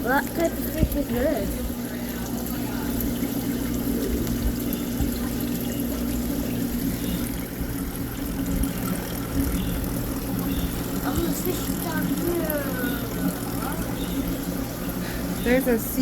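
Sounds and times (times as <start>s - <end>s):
pumps humming: 0.0s - 16.0s
water trickling: 0.0s - 16.0s.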